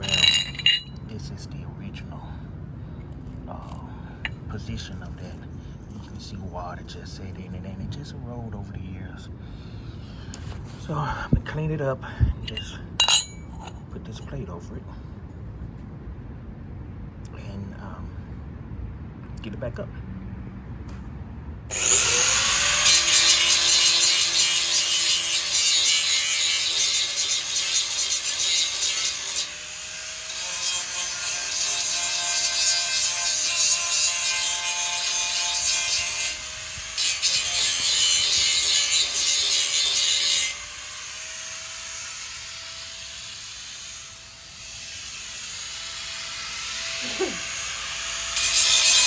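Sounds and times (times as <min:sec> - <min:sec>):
electric grinder grinding steel: 0:21.7 - 0:49.0.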